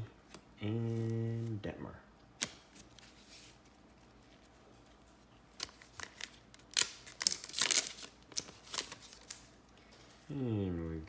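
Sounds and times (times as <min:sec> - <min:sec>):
foil wrapper tearing and crinkling: 0:05.6 - 0:09.5.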